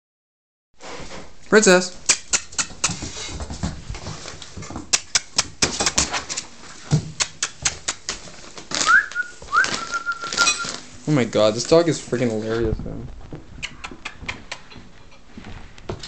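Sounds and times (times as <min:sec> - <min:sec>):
puppy chewing clicks: 0:13.6 - 0:14.8.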